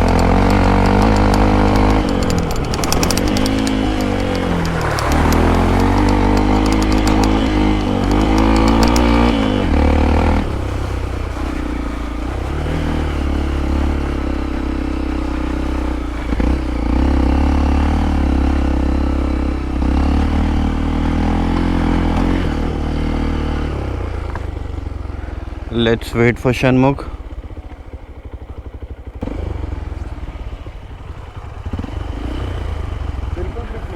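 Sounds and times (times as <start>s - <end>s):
clattering rattle: 0.0s - 10.6s
motorcycle engine revving: 0.0s - 33.9s.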